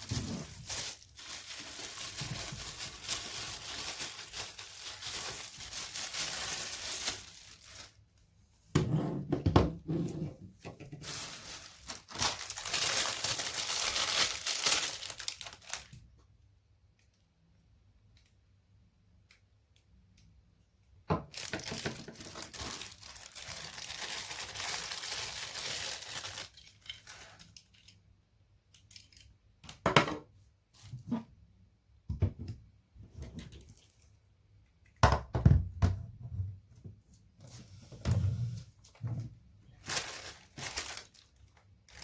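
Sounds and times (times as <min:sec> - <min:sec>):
packaging tearing and crinkling: 0:00.0 - 0:08.0, 0:11.0 - 0:16.0, 0:21.3 - 0:27.9, 0:39.8 - 0:42.0.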